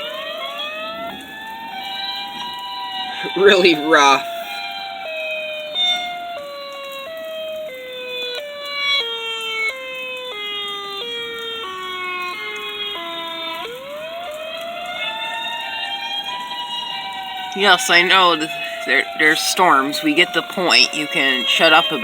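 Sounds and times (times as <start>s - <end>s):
storm warning siren: 0.0s - 22.0s.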